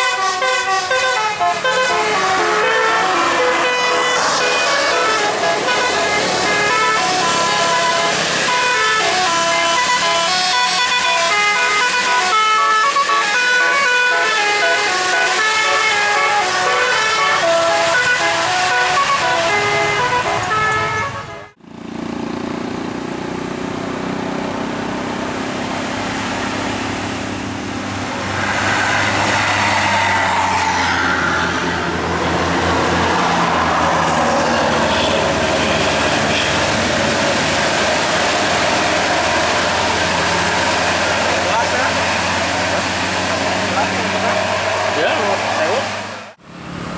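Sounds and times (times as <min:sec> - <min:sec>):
musical air horn tune: 0:00.0 - 0:21.6
engine and traffic noise: 0:00.0 - 0:46.9.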